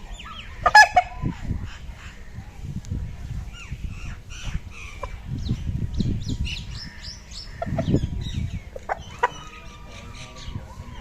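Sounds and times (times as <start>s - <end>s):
chickens clucking: 0.2s - 2.4s, 4.0s - 5.4s, 6.9s - 11.0s.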